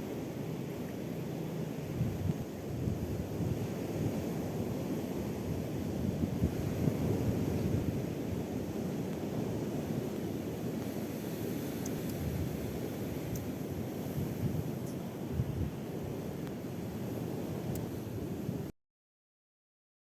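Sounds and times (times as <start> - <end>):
wind buffeting microphone: 1.9 - 10.0, 11.5 - 16.3.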